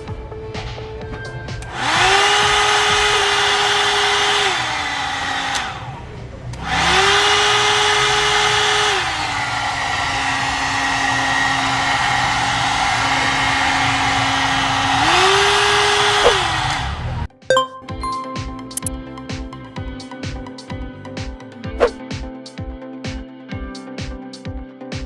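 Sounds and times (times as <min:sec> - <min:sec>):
hair dryer brush fan whine: 0:01.7 - 0:05.9, 0:06.6 - 0:16.6.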